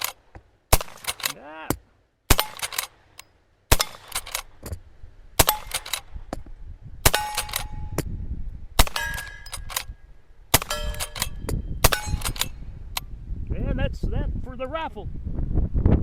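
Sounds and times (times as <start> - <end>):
rifle shots: 0.0 - 1.4, 2.3 - 3.1, 3.7 - 4.6, 5.4 - 6.2, 7.0 - 7.9, 8.8 - 12.6
metallic ring of steel targets: 5.4 - 6.1, 7.0 - 8.1, 8.8 - 12.6.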